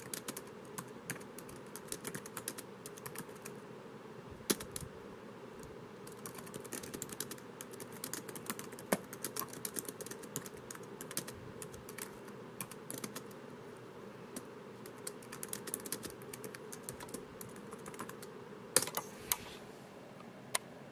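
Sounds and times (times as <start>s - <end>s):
laptop keyboard typing: 0.0s - 3.6s, 4.5s - 4.9s, 6.0s - 13.4s, 14.3s - 19.1s.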